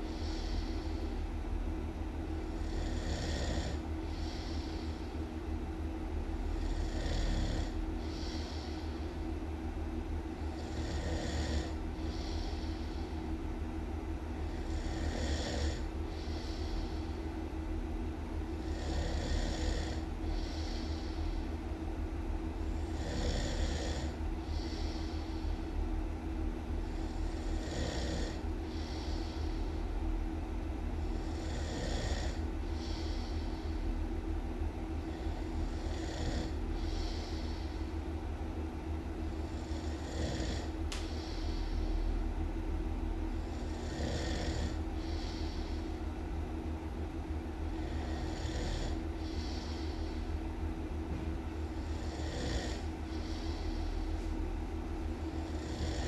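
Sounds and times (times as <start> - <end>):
steady low hum: 0.0 - 56.0
person snoring loudly: 2.6 - 5.0, 6.4 - 8.8, 10.6 - 13.0, 14.5 - 17.0, 18.6 - 21.1, 22.7 - 25.2, 26.8 - 29.4, 31.1 - 33.4, 35.0 - 37.7, 39.4 - 41.5, 43.4 - 45.7, 47.8 - 50.2, 51.8 - 54.0, 55.3 - 56.0.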